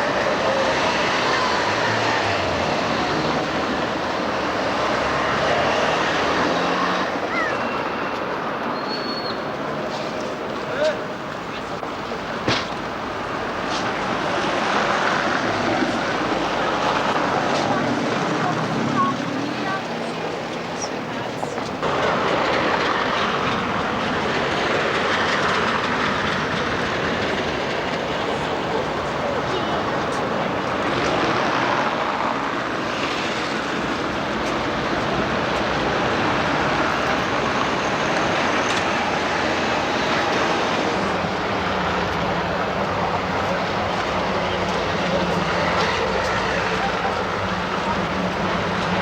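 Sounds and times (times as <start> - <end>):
road traffic passing: 0.0 - 49.0
tram wheels rumbling on rails: 0.0 - 49.0.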